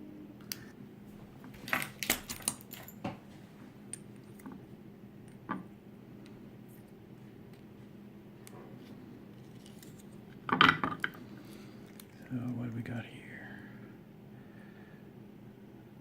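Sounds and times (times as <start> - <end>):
small metal clicks of lock parts: 1.6 - 3.0.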